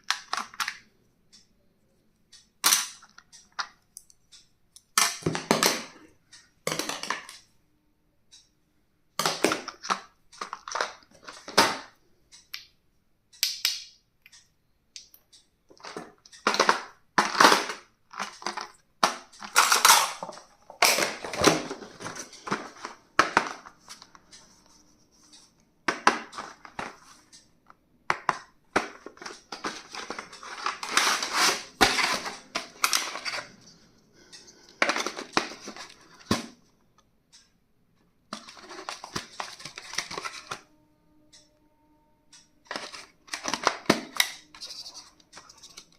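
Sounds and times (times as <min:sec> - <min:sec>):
crinkling of wrappers: 0:28.8 - 0:33.6.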